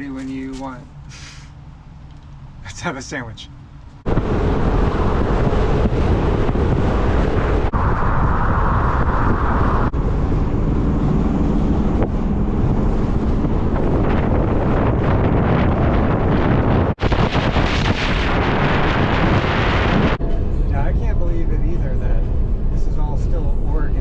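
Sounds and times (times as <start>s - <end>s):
vehicle driving rumble: 0.0s - 24.0s
hiss: 1.1s - 1.5s
wind buffeting microphone: 4.0s - 21.2s.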